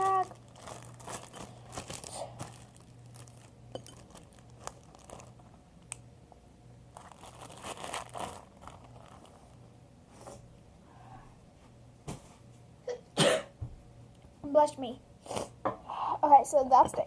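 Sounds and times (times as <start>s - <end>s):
plastic bag crinkling: 0.0s - 5.6s, 6.9s - 9.7s.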